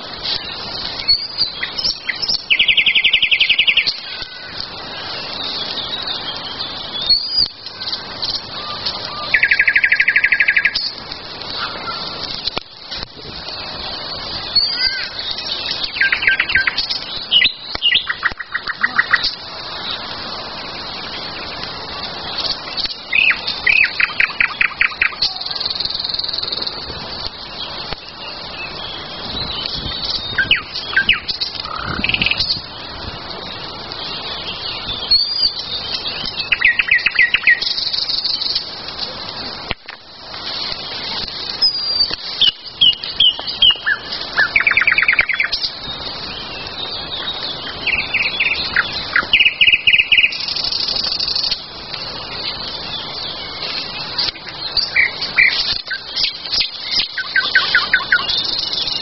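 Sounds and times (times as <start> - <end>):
songbirds chirping: 0.0 - 59.0
bird trill: 0.9 - 12.2, 14.0 - 19.4, 22.4 - 26.8, 34.3 - 38.6, 41.6 - 59.0.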